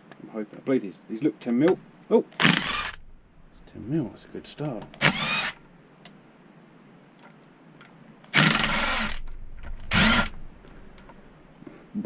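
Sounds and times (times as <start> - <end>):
power ratchet whirring: 2.4 - 3.2, 4.7 - 5.6, 8.3 - 11.2.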